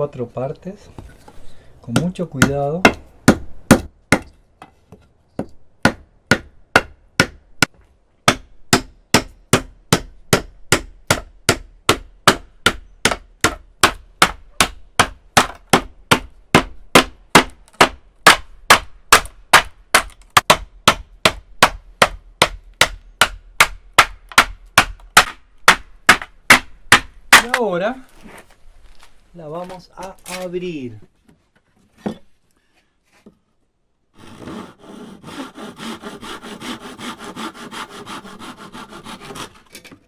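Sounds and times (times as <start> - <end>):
hammer blows splitting bamboo: 5.4 - 27.7, 34.2 - 39.9.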